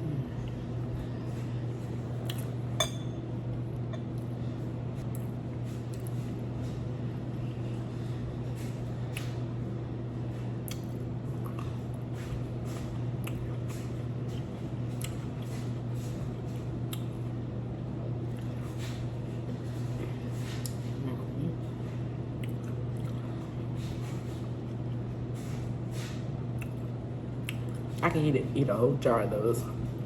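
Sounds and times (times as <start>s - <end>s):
low electrical hum: 0.0s - 30.0s
person chewing food: 10.6s - 15.8s, 16.5s - 17.2s, 22.4s - 25.5s, 26.5s - 27.9s.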